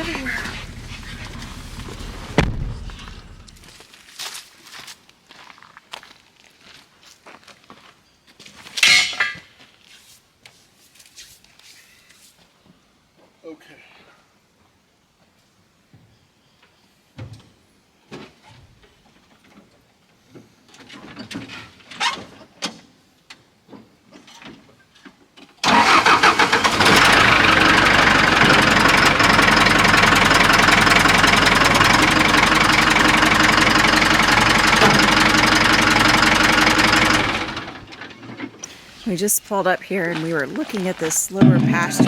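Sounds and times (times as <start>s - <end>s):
vehicle engine running: 0.0s - 3.8s, 26.2s - 42.0s.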